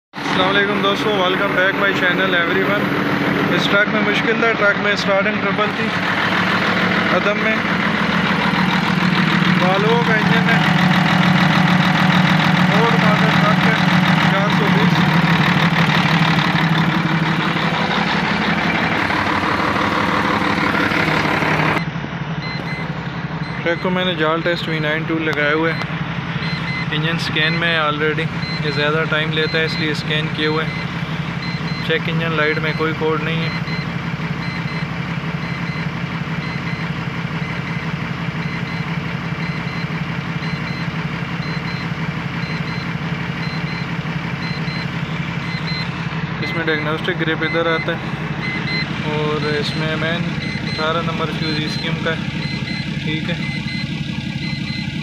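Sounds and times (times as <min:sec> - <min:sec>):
truck diesel engine running: 0:00.2 - 0:55.0
electronic double beep: 0:21.8 - 0:24.0, 0:28.4 - 0:55.0.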